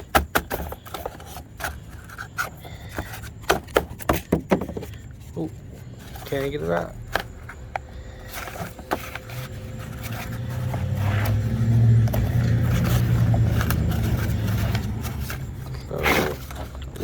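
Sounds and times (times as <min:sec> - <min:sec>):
parts handled in cardboard box: 0:00.0 - 0:17.0
low engine rumble: 0:04.9 - 0:17.0.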